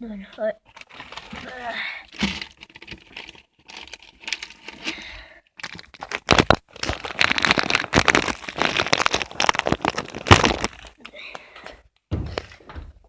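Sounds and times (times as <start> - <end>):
plastic packaging crinkling: 0.6 - 11.1.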